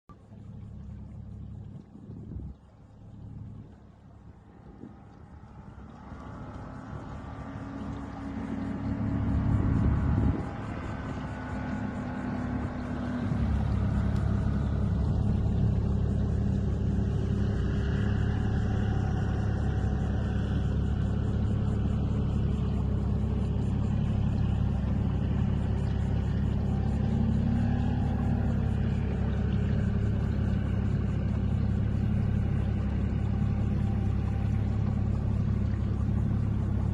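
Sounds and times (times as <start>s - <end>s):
engine droning: 0.1s - 36.9s.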